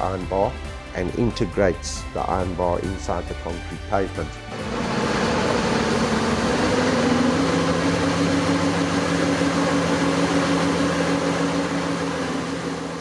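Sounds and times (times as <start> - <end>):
concrete paver machine hum: 4.4 - 13.0.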